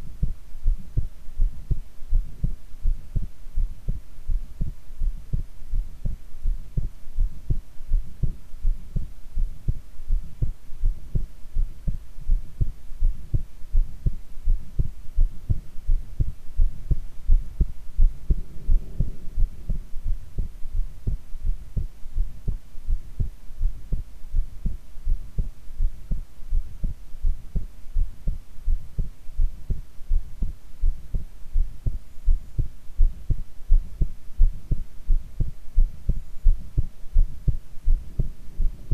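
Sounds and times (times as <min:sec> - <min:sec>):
heartbeat thumps: 0:00.0 - 0:38.9.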